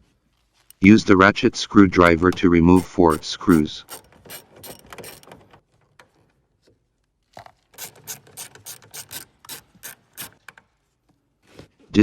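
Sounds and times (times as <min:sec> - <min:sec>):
ratchet screwdriver clicking: 0:02.7 - 0:05.5, 0:07.8 - 0:10.4.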